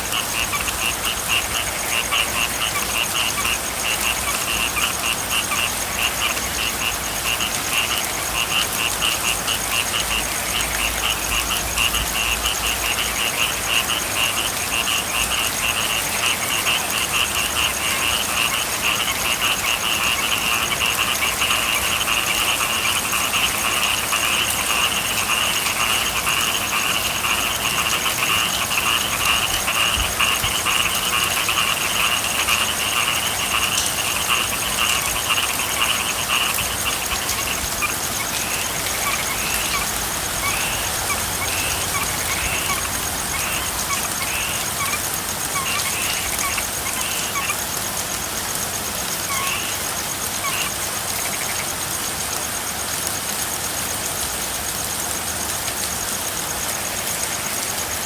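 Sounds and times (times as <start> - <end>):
frogs calling in trills: 0.0 - 58.0
rain hiss: 0.0 - 58.0.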